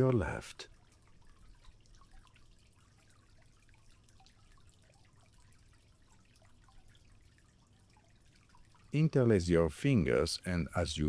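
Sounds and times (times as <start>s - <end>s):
faint trickling water: 0.0s - 11.0s.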